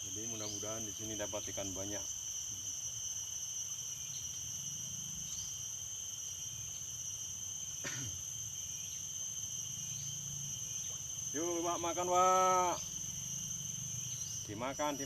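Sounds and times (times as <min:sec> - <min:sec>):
cicadas droning: 0:00.0 - 0:15.0.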